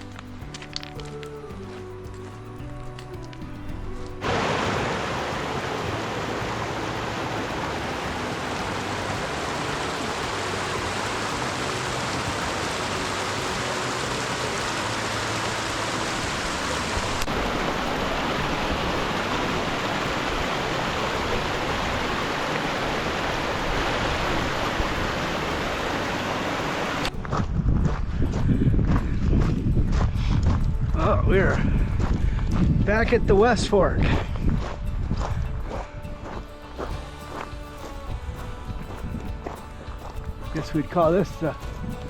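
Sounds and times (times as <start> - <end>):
creek rushing over rocks: 3.0 - 27.2, 33.1 - 42.0.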